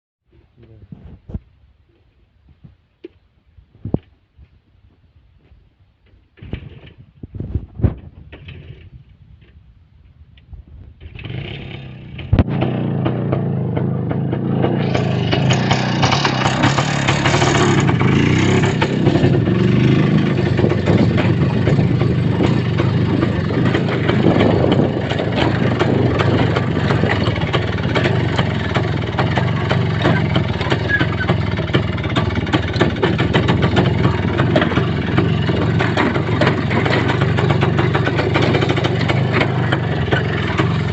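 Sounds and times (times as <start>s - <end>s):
vehicle engine running: 11.2s - 40.9s.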